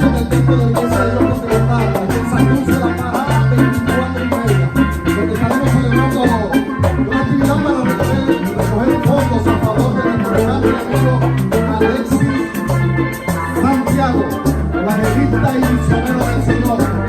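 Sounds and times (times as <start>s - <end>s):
upbeat latin band music: 0.0s - 17.0s.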